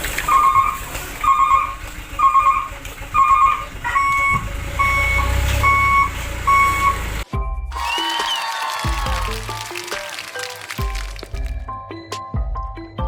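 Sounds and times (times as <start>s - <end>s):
truck reversing alarm beeping: 4.2s - 7.2s.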